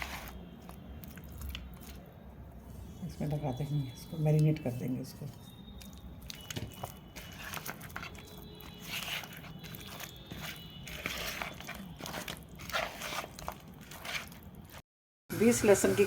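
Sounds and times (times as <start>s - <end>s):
hands rubbing wet paste into fish: 2.7s - 14.8s.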